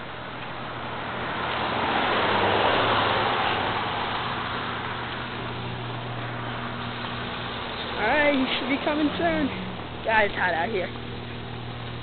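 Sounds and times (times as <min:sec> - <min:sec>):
car driving past: 0:00.7 - 0:09.8.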